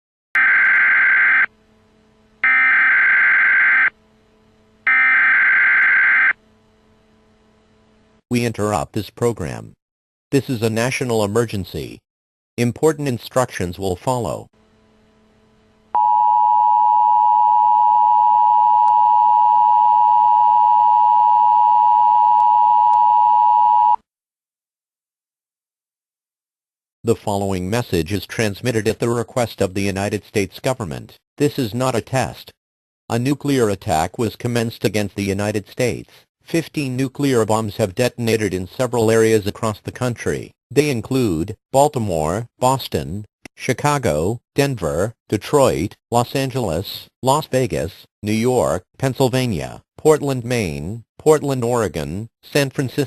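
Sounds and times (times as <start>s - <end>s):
two-tone electronic alert tone: 4.9s - 6.4s.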